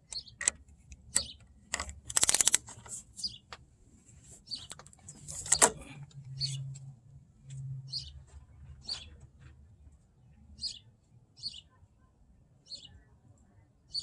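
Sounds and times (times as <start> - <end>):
bird chirping: 0.0 - 0.5, 3.2 - 3.5, 4.4 - 5.6, 6.3 - 6.7.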